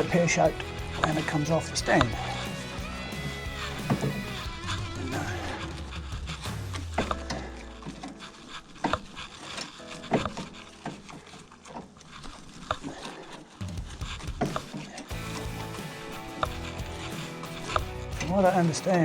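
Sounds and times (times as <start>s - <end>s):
rubbing: 7.9s - 18.8s.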